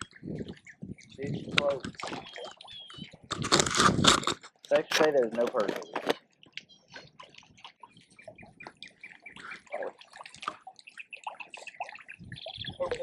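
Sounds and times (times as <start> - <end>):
water lapping against dock: 0.0 - 13.0.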